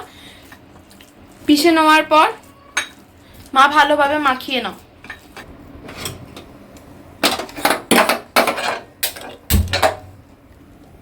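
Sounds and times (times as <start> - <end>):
metal kitchenware clattering: 7.2 - 10.2.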